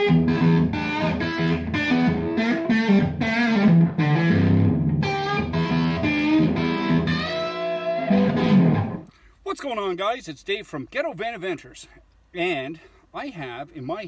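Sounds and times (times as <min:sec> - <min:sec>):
electric guitar music: 0:00.0 - 0:09.1.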